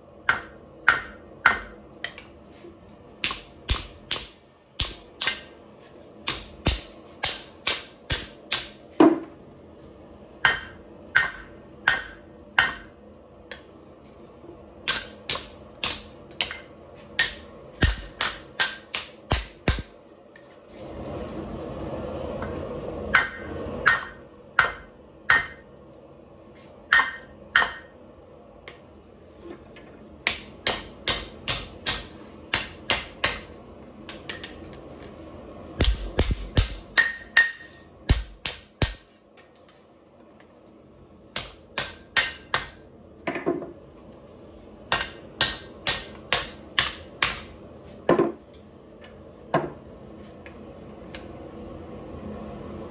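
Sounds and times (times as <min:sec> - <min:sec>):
hammer striking hot metal: 0:00.3 - 0:02.3, 0:03.2 - 0:09.0, 0:10.4 - 0:13.6, 0:14.8 - 0:20.0, 0:23.1 - 0:25.8, 0:26.9 - 0:28.1, 0:30.3 - 0:34.6, 0:35.8 - 0:39.5, 0:41.4 - 0:43.0, 0:44.9 - 0:47.6.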